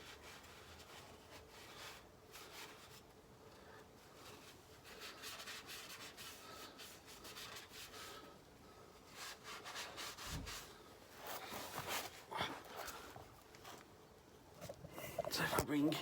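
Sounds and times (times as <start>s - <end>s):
body scraping under a car: 10.2s - 13.9s.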